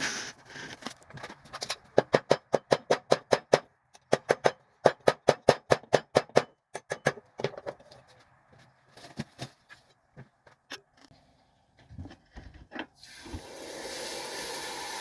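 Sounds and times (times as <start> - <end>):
hammer striking rebar on anvil: 2.0 - 7.3.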